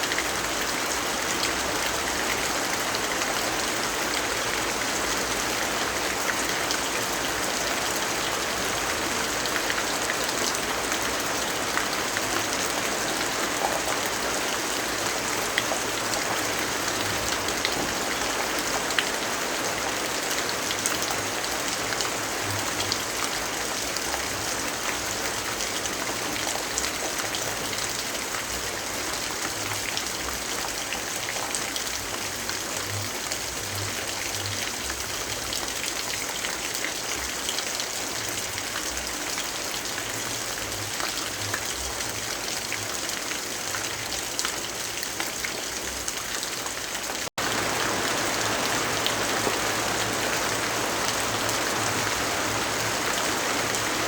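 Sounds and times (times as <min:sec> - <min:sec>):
steady rainfall: 0:00.0 - 0:54.0
rain drops tapping: 0:47.3 - 0:54.0.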